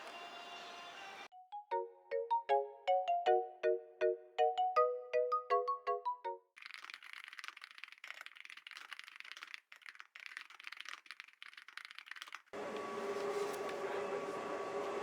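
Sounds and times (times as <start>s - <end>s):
computer keyboard typing: 6.6s - 12.5s.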